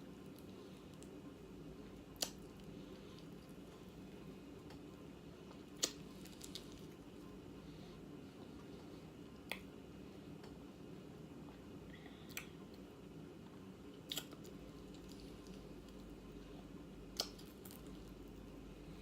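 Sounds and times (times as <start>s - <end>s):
low steady hum: 0.0s - 19.0s
mouth clicks while eating: 2.2s - 2.5s, 5.8s - 6.0s, 9.4s - 9.7s, 12.3s - 12.6s, 14.1s - 14.6s, 17.1s - 17.7s.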